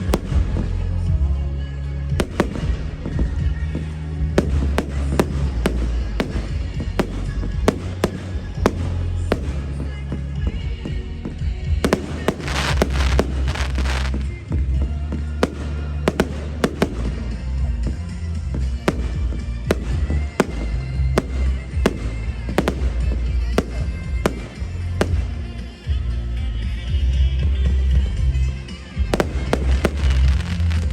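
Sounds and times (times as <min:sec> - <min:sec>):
sharp firework bangs: 0:00.0 - 0:00.8, 0:02.2 - 0:11.0, 0:11.7 - 0:26.0, 0:29.0 - 0:30.9
firework crackle: 0:00.0 - 0:01.2, 0:02.2 - 0:26.4, 0:27.6 - 0:30.9
loud music with heavy bass: 0:11.2 - 0:30.9.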